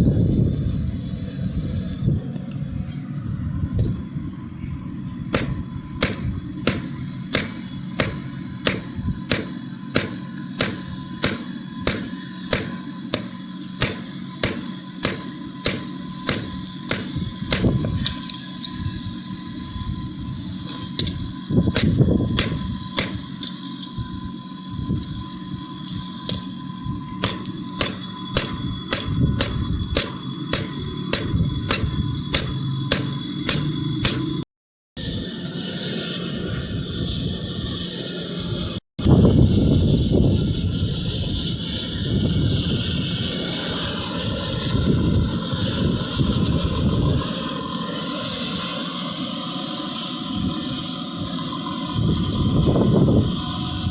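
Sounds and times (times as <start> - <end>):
low hum: 0.0 - 34.4
hammer striking steel on anvil: 5.3 - 18.4, 20.7 - 23.6, 26.3 - 26.5, 27.2 - 34.4.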